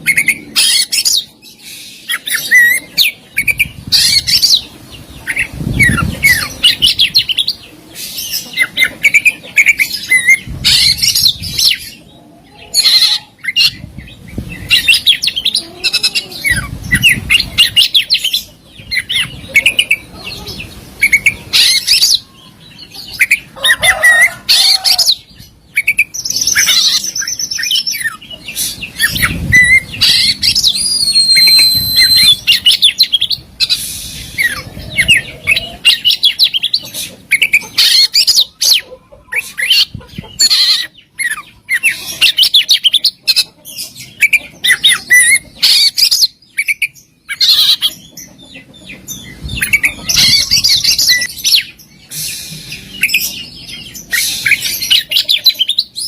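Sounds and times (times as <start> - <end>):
songbird singing varied song: 24.8 - 38.8, 39.4 - 56.0.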